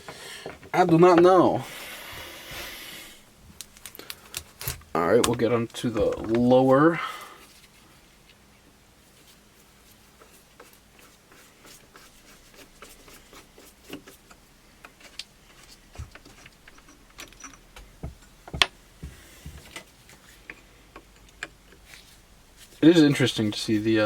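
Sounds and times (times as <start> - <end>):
metal parts clicking and tapping: 3.6 - 6.5, 13.8 - 18.8, 19.5 - 21.9.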